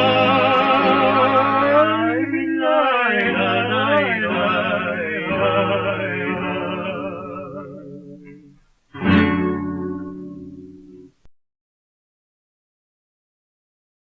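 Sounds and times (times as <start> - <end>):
men singing duet with vibrato: 0.0 - 8.5
acoustic guitars: 0.0 - 11.3.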